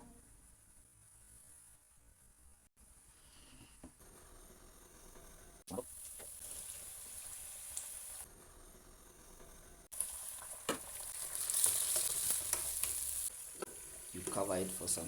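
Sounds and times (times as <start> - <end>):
food sizzling in a pan: 5.7 - 8.3, 9.1 - 15.0.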